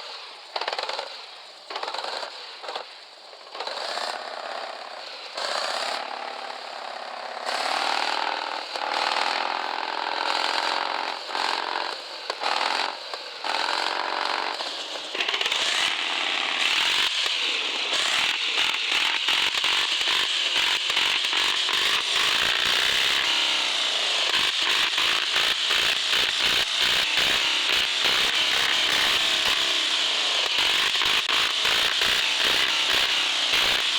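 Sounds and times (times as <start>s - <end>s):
hissy grinding run: 0.0s - 33.9s
electric motor and gearbox whining: 14.5s - 33.9s.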